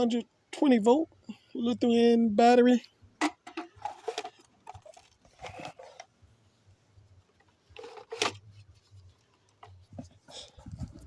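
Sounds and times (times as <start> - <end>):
battery and charger being handled: 3.2 - 6.2, 7.3 - 11.0.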